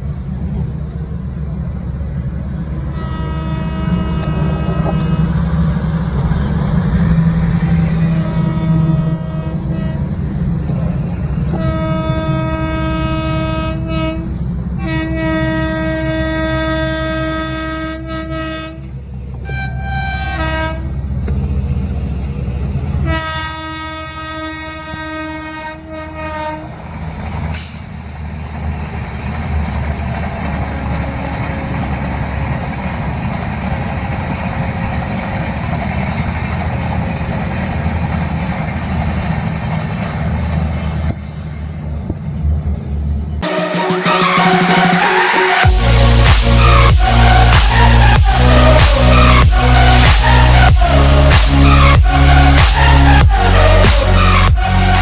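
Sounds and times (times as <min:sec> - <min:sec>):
train rumbling: 0:00.0 - 0:55.0
locomotive horn blasts: 0:02.9 - 0:05.7, 0:07.4 - 0:10.2, 0:11.5 - 0:21.2, 0:23.0 - 0:26.8, 0:30.4 - 0:32.2, 0:43.4 - 0:55.0.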